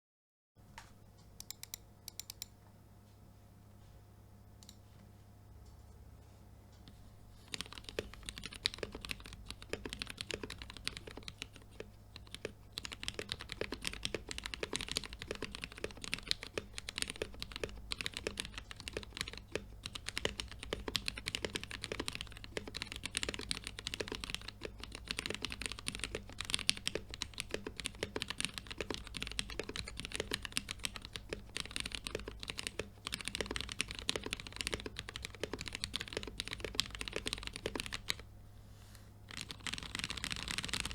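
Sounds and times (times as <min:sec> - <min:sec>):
fast typing on mechanical keyboard: 0:07.4 - 0:38.2, 0:39.3 - 0:40.9.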